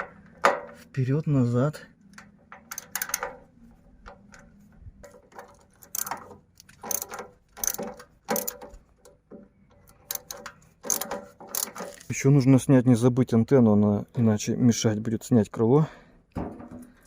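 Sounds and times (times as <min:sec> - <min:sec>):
ratchet wrench clicking: 0:02.1 - 0:03.4, 0:05.5 - 0:08.8, 0:09.8 - 0:12.1.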